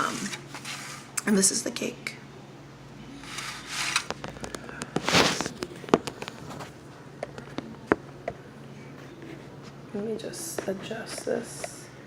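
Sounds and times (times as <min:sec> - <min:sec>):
packaging crackling rustles: 0:03.3 - 0:06.8.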